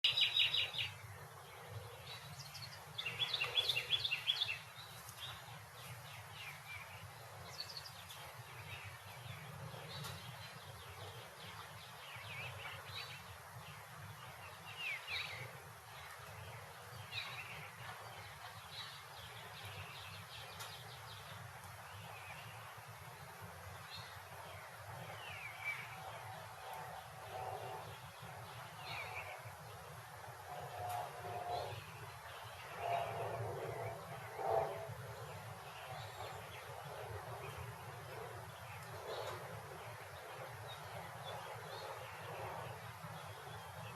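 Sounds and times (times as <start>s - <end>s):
small birds chirping: 0.0s - 29.6s.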